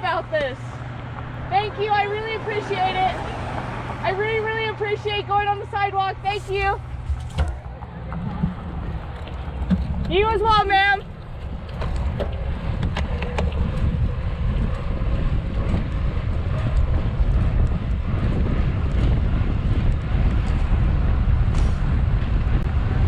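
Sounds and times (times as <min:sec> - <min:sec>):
wind buffeting microphone: 0:00.0 - 0:23.0.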